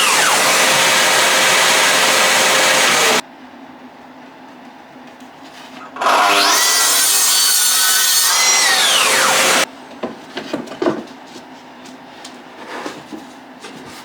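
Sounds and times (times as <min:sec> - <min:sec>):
track saw cutting plywood: 0:00.0 - 0:03.2, 0:06.0 - 0:09.7.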